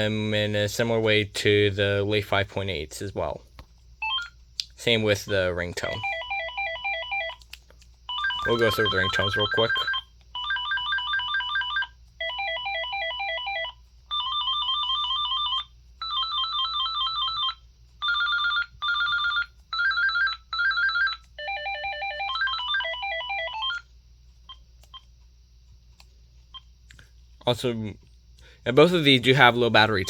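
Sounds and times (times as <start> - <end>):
phone ringtone beeping melodies: 8.1 - 23.8.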